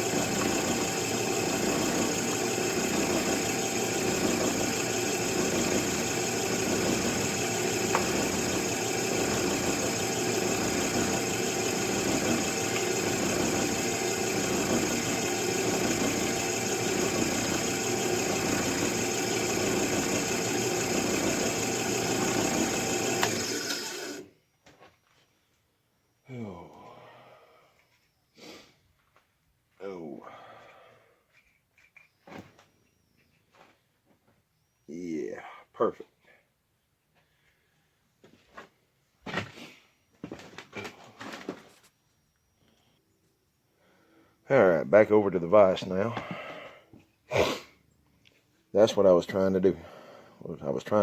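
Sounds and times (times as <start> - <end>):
electric drill boring through plastic: 0.0 - 24.3.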